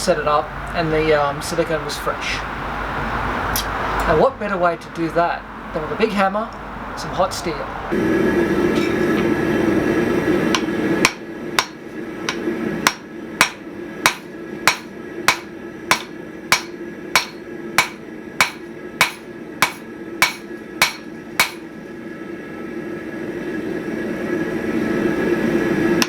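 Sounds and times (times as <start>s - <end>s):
steady drone: 7.9s - 26.0s
hammer forging steel on anvil: 10.5s - 21.7s.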